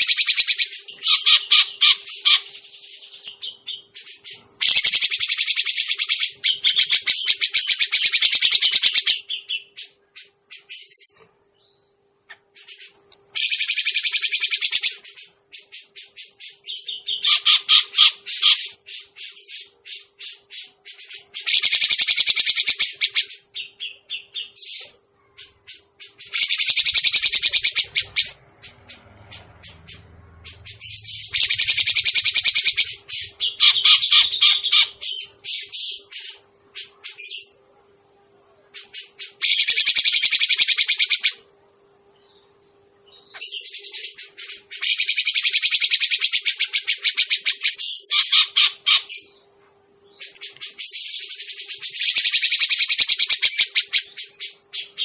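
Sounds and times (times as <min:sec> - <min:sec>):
bird harsh rapid chattering: 0:00.0 - 0:02.6, 0:04.6 - 0:09.7, 0:12.6 - 0:15.8, 0:16.5 - 0:19.6, 0:20.2 - 0:23.4, 0:25.5 - 0:37.4, 0:38.9 - 0:41.4, 0:43.4 - 0:49.3, 0:50.4 - 0:55.0.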